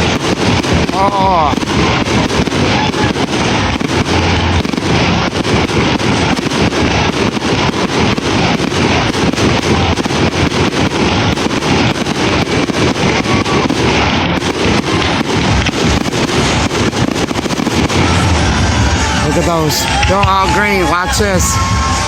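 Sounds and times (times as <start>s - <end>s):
fireworks rapid bangs: 0.0s - 22.0s.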